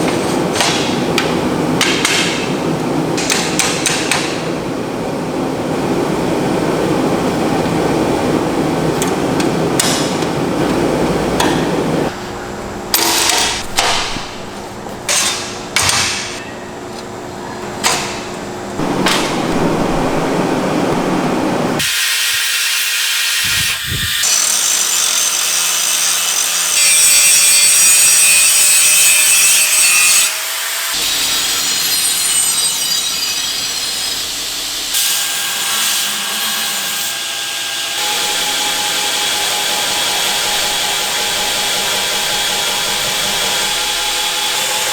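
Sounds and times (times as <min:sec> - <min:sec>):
sharp knocks: 0:13.0 - 0:16.4, 0:18.8 - 0:21.8
loud high hiss: 0:18.8 - 0:24.5.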